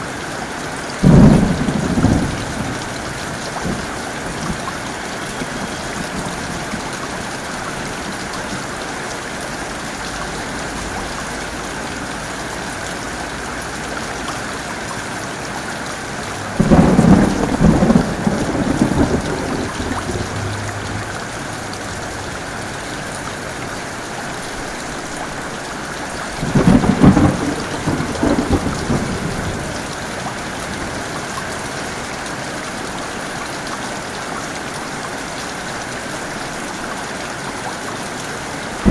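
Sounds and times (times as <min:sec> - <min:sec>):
heavy rain falling: 0:00.0 - 0:38.9
thunder rumbling: 0:01.0 - 0:08.1, 0:16.0 - 0:24.0, 0:26.2 - 0:31.4.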